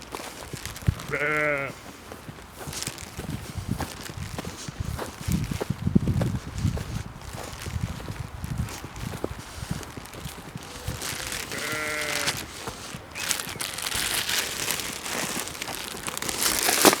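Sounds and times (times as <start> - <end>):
rustling and handling noise: 0.0 - 17.0
sheep bleating: 1.0 - 1.8, 10.8 - 12.6.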